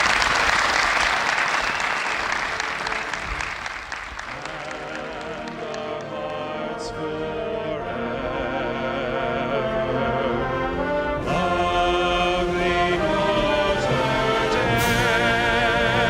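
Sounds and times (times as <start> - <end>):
stadium crowd applauding and cheering: 0.0 - 6.5
music with brass: 2.6 - 3.6, 4.3 - 16.0.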